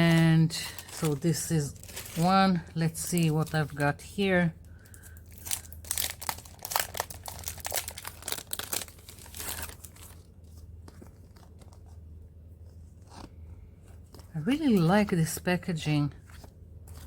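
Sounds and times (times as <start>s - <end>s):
plastic packaging crinkling: 0.0s - 12.0s.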